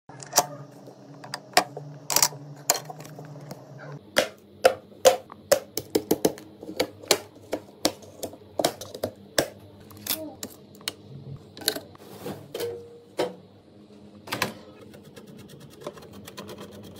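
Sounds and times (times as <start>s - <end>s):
steady low hum: 0.1s - 16.9s.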